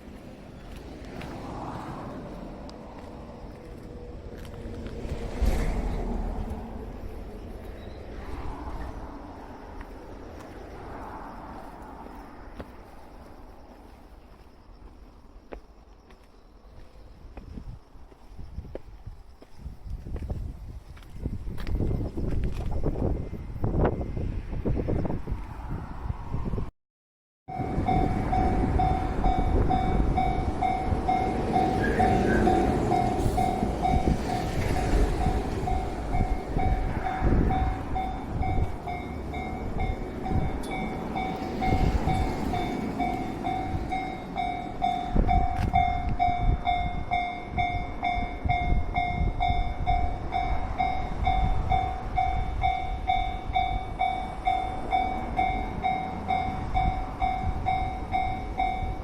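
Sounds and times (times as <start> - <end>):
train wheels rumbling on rail: 0.0 - 15.2, 16.2 - 26.7, 27.5 - 59.0
level crossing warning bell: 27.5 - 59.0.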